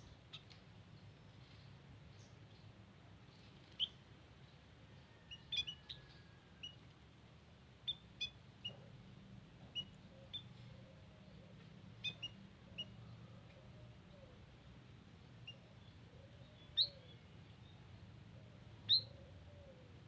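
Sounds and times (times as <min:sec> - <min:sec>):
birds chirping: 0:03.3 - 0:04.0, 0:07.8 - 0:14.4, 0:15.2 - 0:20.0.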